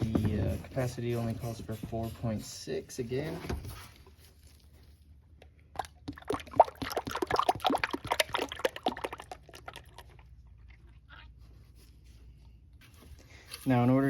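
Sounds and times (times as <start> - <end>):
oil glugging into funnel: 5.6 - 11.4.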